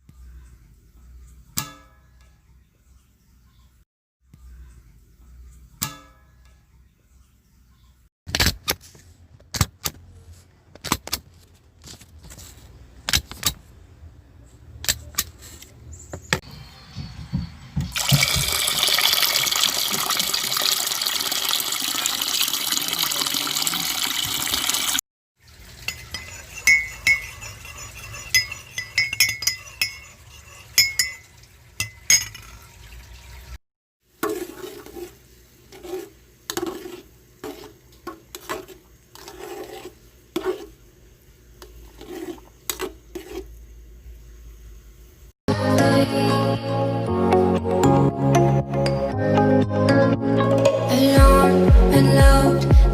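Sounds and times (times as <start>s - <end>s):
running water rushing: 18.0s - 25.8s
glass clinking: 25.8s - 32.6s.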